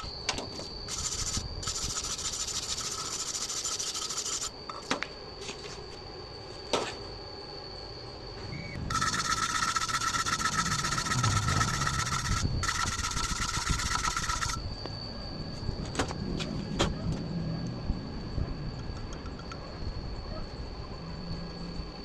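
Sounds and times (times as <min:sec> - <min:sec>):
electric arc welding crackling: 0:00.9 - 0:04.5, 0:08.9 - 0:14.6.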